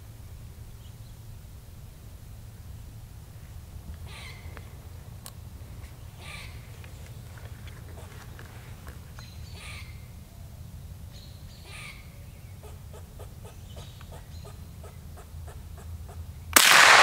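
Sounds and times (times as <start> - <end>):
clucking calls: 3.8 - 10.1, 11.6 - 16.5
animal calls: 4.0 - 4.8, 6.0 - 10.1, 11.6 - 16.5
rifle shot: 16.6 - 17.0.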